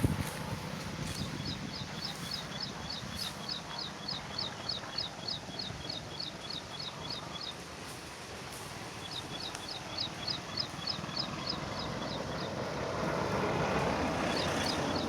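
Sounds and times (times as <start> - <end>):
low outdoor background: 0.0 - 15.0
bird chirping repeatedly: 1.1 - 7.7, 8.8 - 13.0, 13.9 - 15.0.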